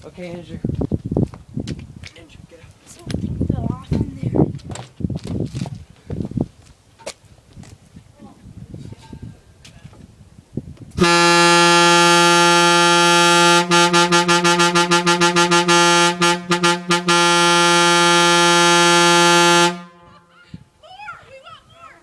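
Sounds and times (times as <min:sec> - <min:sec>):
truck air horn blast: 0:11.0 - 0:20.3.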